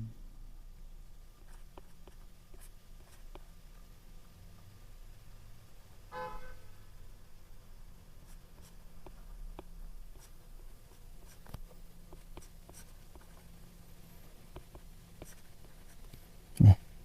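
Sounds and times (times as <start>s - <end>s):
low steady hum: 0.0s - 17.0s
pen writing: 1.4s - 3.5s, 8.3s - 13.4s, 14.5s - 16.1s.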